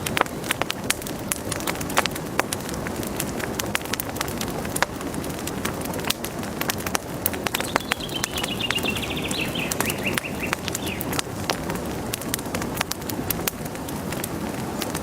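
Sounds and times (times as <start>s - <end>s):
campfire crackling and popping: 0.0s - 15.0s
bird trilling: 7.5s - 11.2s.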